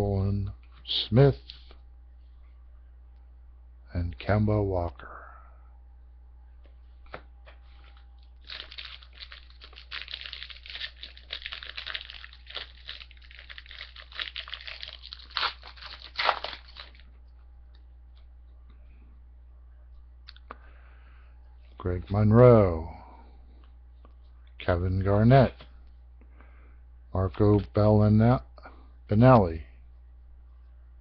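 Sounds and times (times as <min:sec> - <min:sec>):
foil wrapper crinkling: 0:08.2 - 0:17.1.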